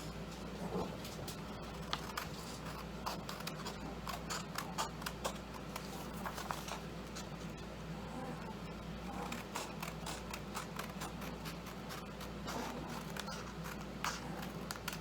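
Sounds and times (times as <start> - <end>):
scissors snipping paper: 1.2 - 7.3, 9.1 - 15.0.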